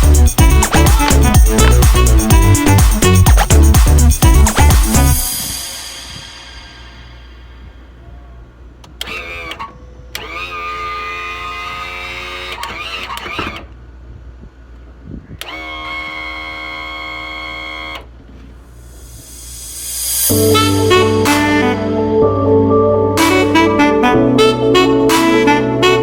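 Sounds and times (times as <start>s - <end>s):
starter motor cranking: 0.0s - 5.1s, 9.0s - 13.8s, 15.4s - 18.1s.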